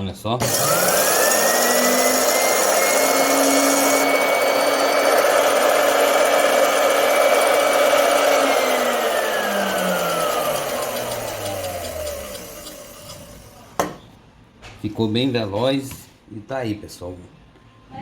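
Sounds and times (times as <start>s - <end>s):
electric cutting machine motor whine: 0.4s - 13.8s.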